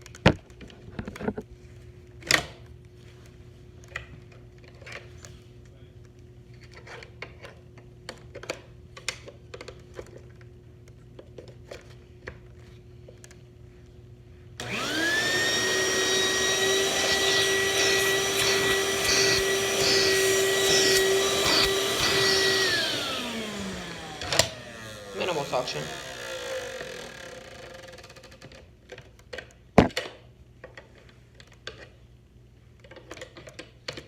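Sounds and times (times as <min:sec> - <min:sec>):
vacuum broom motor whine: 0:14.6 - 0:28.2.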